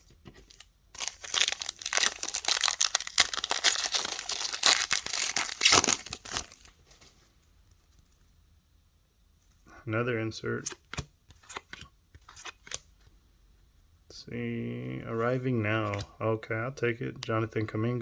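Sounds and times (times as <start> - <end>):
plastic wrapper crinkling and tearing: 0.0 - 6.8.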